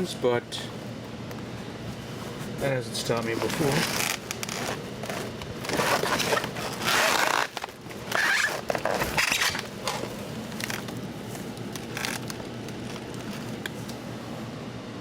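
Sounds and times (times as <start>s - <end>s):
packing material rustling: 2.0s - 13.9s.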